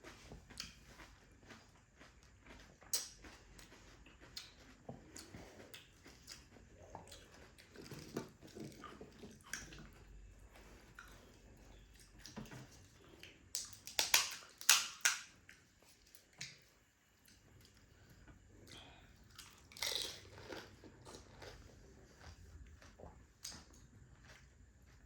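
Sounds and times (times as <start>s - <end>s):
soft chewing: 0.0s - 14.7s, 15.3s - 25.0s
crisp shells crunching in mouth: 19.4s - 21.6s.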